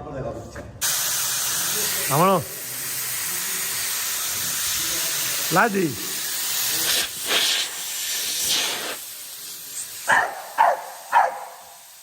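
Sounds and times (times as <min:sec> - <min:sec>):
steady spraying hiss: 0:00.8 - 0:12.0
dog barking: 0:10.1 - 0:11.8.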